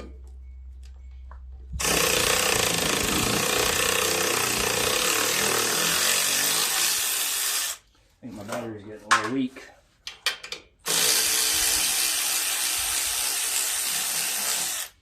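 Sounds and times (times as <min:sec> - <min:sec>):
cordless power tool running: 0:01.8 - 0:07.7.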